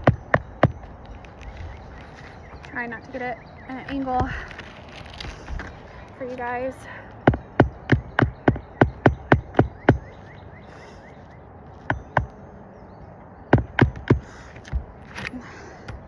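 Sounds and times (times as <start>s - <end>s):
hammer hitting roofing nails: 7.2s - 10.2s, 13.5s - 16.0s.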